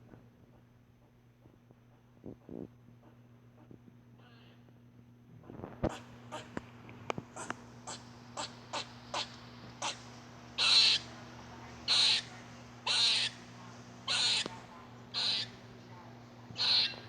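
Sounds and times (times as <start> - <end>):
squirrel hoarse calls: 7.4 - 10.0, 10.6 - 11.1, 11.9 - 13.4, 14.1 - 15.6, 16.5 - 17.0
squirrel chirping: 10.6 - 11.0, 11.9 - 12.3, 12.9 - 13.4, 14.1 - 14.5, 15.2 - 15.6, 16.6 - 17.0.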